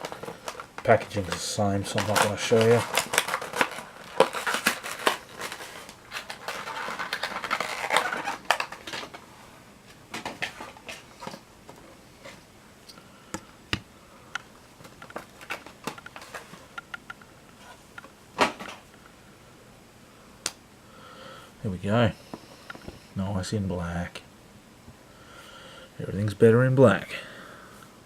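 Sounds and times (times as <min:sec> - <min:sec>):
plastic packaging crinkling: 0:00.0 - 0:09.3, 0:14.8 - 0:16.8.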